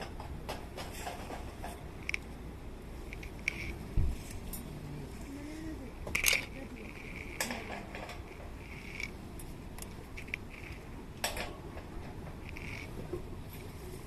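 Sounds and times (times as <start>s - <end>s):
metal camping gear clinking: 6.2s - 9.2s.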